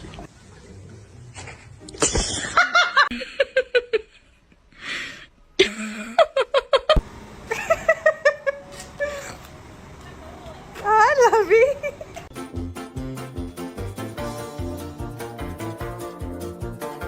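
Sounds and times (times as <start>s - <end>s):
people laughing: 2.2s - 4.2s, 5.6s - 9.4s.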